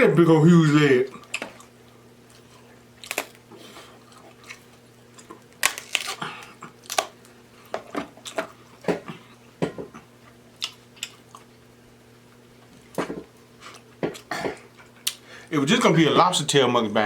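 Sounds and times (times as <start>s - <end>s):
chewing and lip-smacking: 1.1s - 9.4s, 10.0s - 11.5s, 13.6s - 15.2s.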